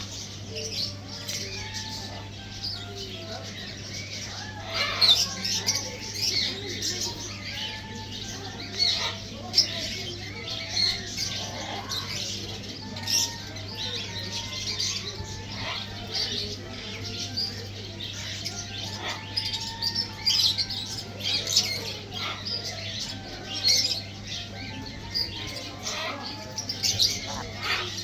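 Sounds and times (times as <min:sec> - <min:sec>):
parrots chirping and calling: 0:00.0 - 0:28.0.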